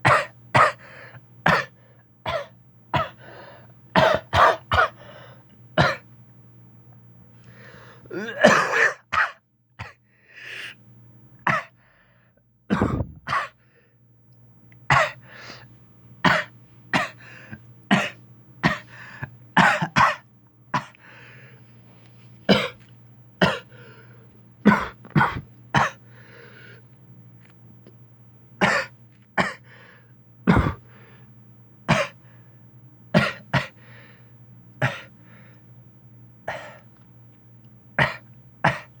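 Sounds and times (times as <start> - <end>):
short sharp coughs: 0.1 - 0.8, 1.5 - 3.2, 4.0 - 5.0, 8.1 - 10.0, 11.5 - 11.7, 12.7 - 13.6, 14.9 - 15.2, 16.3 - 17.2, 17.9 - 18.9, 19.6 - 20.2, 22.5 - 23.7, 24.7 - 26.0, 30.5 - 30.8, 31.9 - 32.2, 33.2 - 33.8, 34.8 - 35.1, 38.0 - 39.0.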